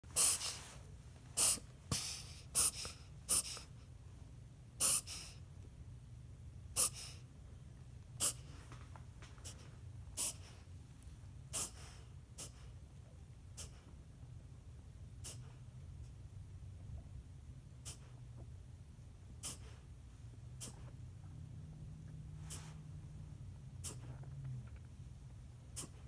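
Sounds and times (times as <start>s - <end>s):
dog breathy spasms: 11.5s - 12.8s, 17.8s - 18.3s, 19.4s - 20.0s, 20.6s - 21.0s, 22.4s - 22.9s, 23.8s - 24.5s, 25.7s - 26.0s.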